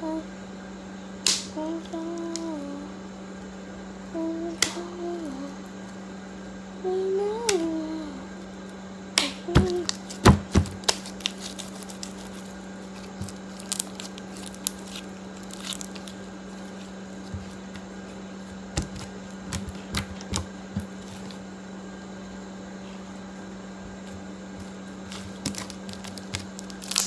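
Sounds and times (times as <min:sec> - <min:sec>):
steady low hum: 0:00.0 - 0:27.0
slime clicking and popping: 0:13.0 - 0:16.2, 0:25.1 - 0:27.0.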